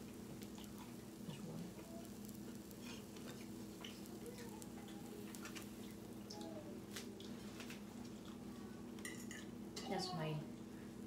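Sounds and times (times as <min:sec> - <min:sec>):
steady low hum: 0:00.0 - 0:11.0
chewing: 0:00.4 - 0:06.5, 0:08.0 - 0:08.5.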